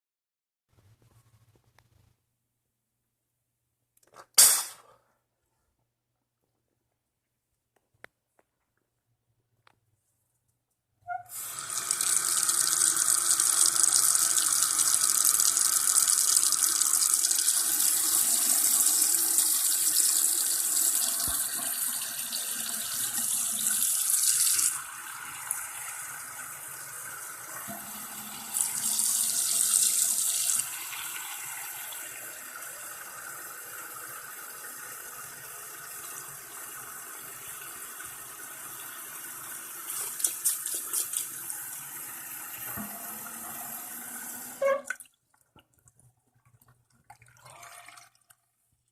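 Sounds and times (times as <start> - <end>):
tap water running into sink: 11.1 - 45.1.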